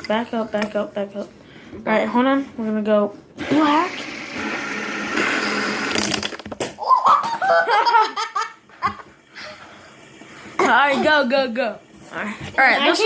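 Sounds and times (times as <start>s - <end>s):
child laughing and giggling: 6.8s - 9.1s.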